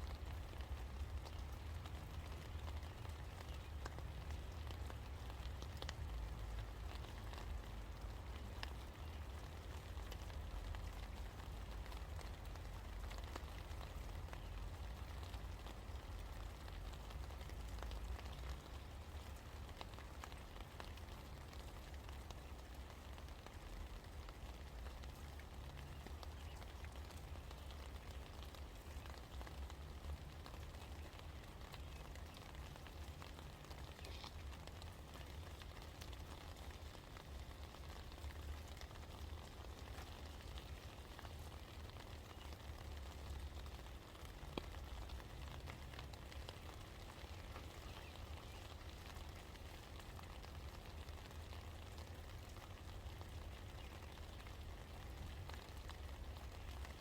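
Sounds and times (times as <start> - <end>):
constant low rumble: 0.0 - 57.0
steady rain pattering: 0.0 - 57.0.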